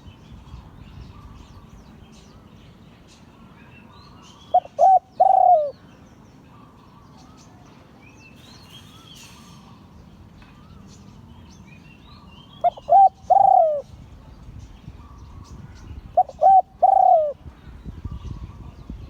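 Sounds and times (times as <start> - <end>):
small birds chirping: 0.0 - 19.0
dove cooing: 4.5 - 5.8, 12.6 - 13.9, 16.1 - 17.4.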